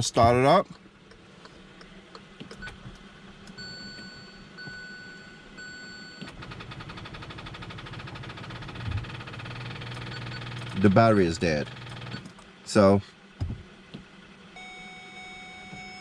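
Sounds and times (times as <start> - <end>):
car warning beeps: 3.5 - 6.4, 8.8 - 10.8, 14.5 - 16.0.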